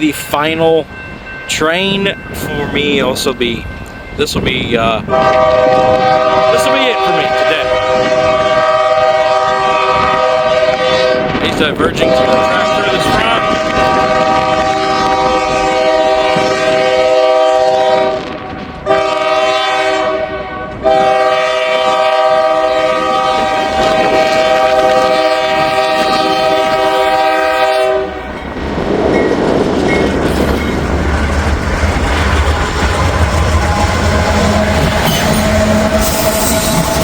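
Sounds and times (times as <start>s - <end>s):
locomotive air horn blasts: 5.1s - 28.2s, 33.0s - 37.0s
locomotive low rumble: 20.2s - 37.0s.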